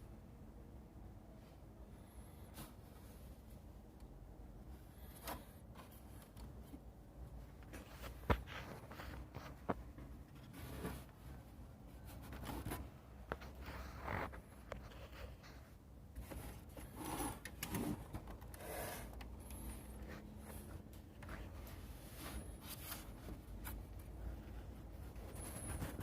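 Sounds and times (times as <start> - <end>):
rubbing and scraping: 7.6 - 26.0.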